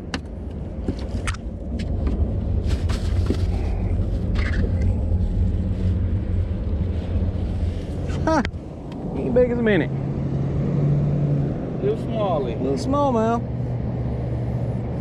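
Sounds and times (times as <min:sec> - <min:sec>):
boat motor rumbling: 0:03.2 - 0:13.7.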